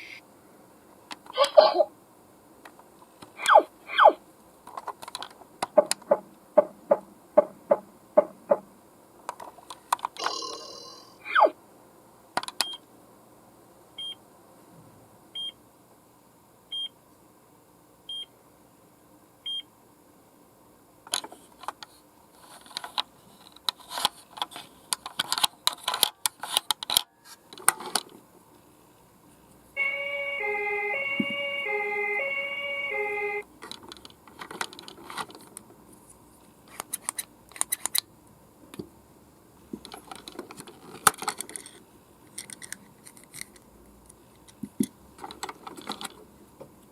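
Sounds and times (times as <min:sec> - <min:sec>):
plastic toy handling clicks: 0:04.7 - 0:06.1, 0:22.7 - 0:28.2, 0:33.6 - 0:35.6, 0:36.7 - 0:38.1, 0:39.8 - 0:46.2
toy electronic siren: 0:29.8 - 0:33.4.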